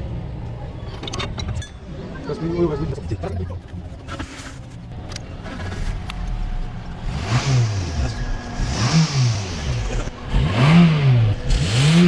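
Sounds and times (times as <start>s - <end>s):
car engine revving: 5.0s - 12.0s.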